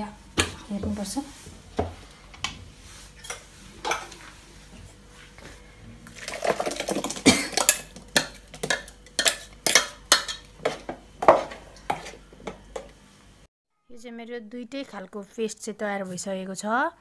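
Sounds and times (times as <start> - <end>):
utensil clinking against a dish: 7.3 - 12.9.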